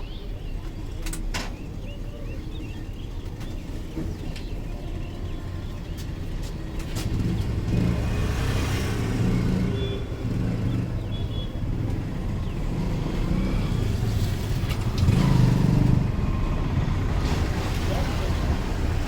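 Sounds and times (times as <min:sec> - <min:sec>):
small birds chirping: 0:00.0 - 0:16.2
road traffic rumbling: 0:00.0 - 0:19.0
vehicle passing close: 0:06.6 - 0:19.0.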